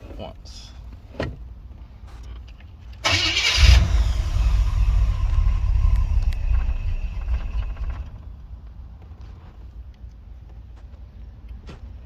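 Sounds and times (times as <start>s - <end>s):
starter motor cranking: 3.0s - 8.3s
car engine running: 3.1s - 8.5s.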